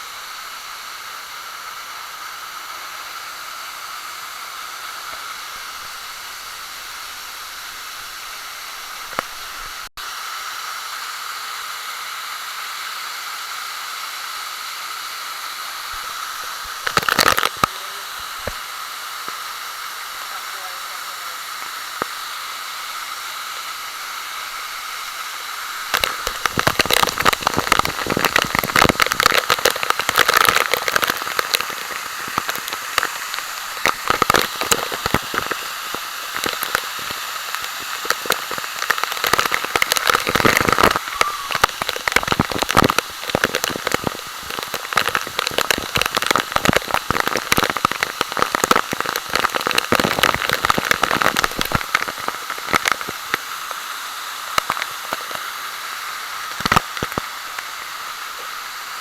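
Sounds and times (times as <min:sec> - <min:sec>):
waterfall hiss: 0:00.0 - 0:59.0
dense irregular crackling: 0:25.8 - 0:53.8.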